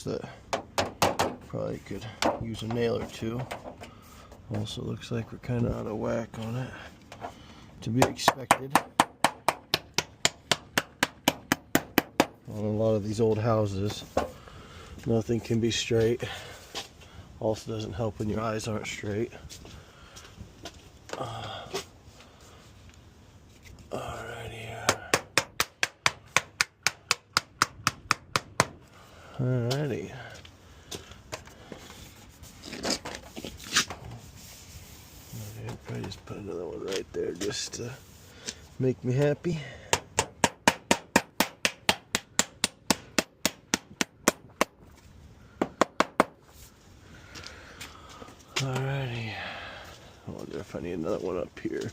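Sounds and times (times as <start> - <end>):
hammer tapping nail: 8.0 - 12.4, 24.9 - 28.8, 39.9 - 44.8
hammer tapping nail into metal: 24.9 - 28.8.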